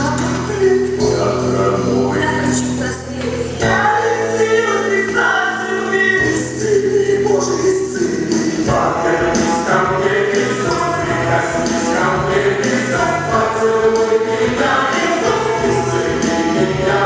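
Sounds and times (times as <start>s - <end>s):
steady bass: 0.0s - 17.0s
chorus singing held notes: 0.1s - 17.0s
rock band playing: 8.0s - 17.0s.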